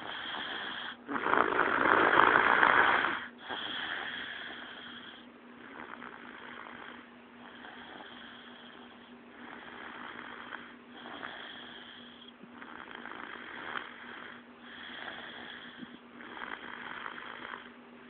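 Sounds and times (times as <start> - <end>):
snoring: 0.0 - 17.8
steady low hum: 0.0 - 18.0.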